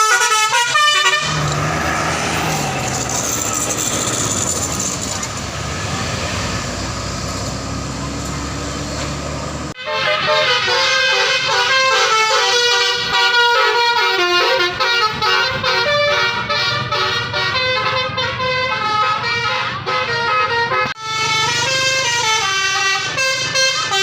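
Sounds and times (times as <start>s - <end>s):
musical bus horn playing tune: 0.0s - 1.5s, 9.7s - 24.0s
bus engine: 0.0s - 24.0s
road noise: 0.0s - 24.0s.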